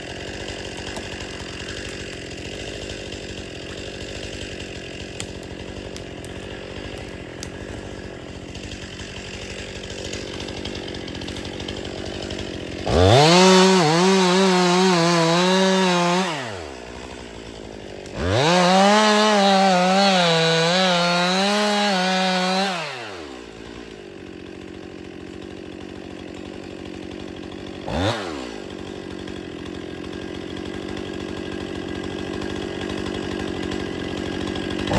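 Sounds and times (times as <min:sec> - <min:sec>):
chainsaw revving: 0:00.0 - 0:34.9.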